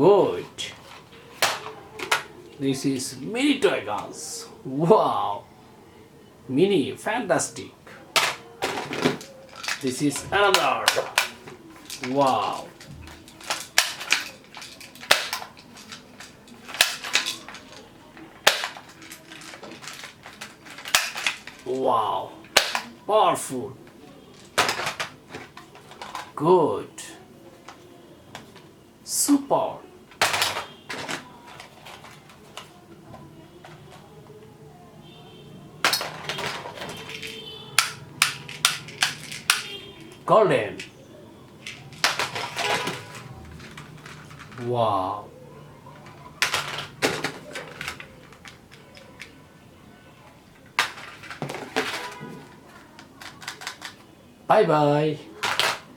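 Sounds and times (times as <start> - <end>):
plastic toy gun clattering: 0.8 - 2.3, 8.1 - 21.7, 22.4 - 23.0, 23.8 - 26.4, 30.1 - 34.0, 35.8 - 44.7, 46.0 - 49.4, 50.5 - 54.1, 55.4 - 55.9
toy gun snapping: 22.5 - 22.9, 37.1 - 39.8.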